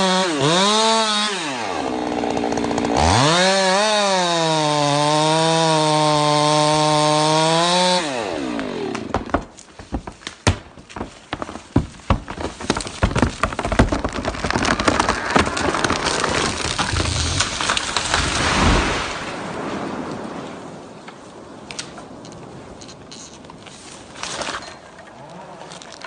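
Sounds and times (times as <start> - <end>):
tree cracking and snapping: 0.0 - 19.4, 21.7 - 26.0
rush of branches: 8.2 - 26.0
tree crashing down: 8.6 - 20.8
debris pattering down: 9.1 - 19.8, 24.1 - 26.0.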